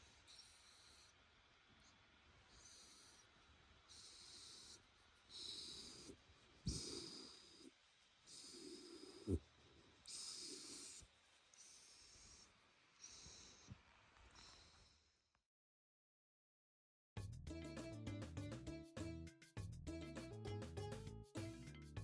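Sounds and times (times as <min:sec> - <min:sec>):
dog whistling nasal breathing: 0:00.0 - 0:09.4, 0:10.0 - 0:15.1
dog snorts: 0:03.9 - 0:07.7, 0:08.3 - 0:09.4, 0:10.1 - 0:13.8.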